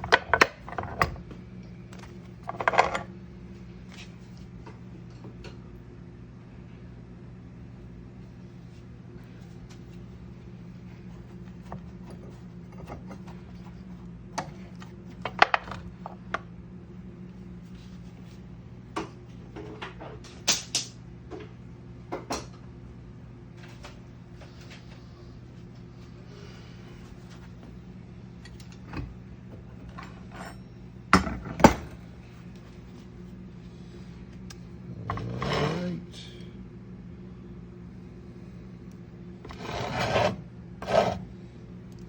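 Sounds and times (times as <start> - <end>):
steady low hum: 0.0 - 42.0.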